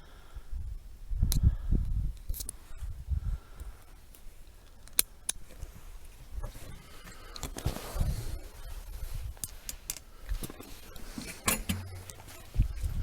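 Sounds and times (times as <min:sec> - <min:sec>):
rustling: 0:05.4 - 0:13.0.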